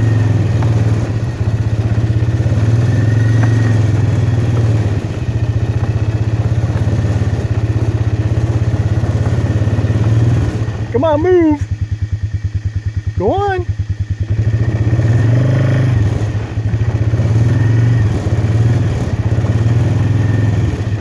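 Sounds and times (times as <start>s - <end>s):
small engine puttering: 0.0s - 21.0s.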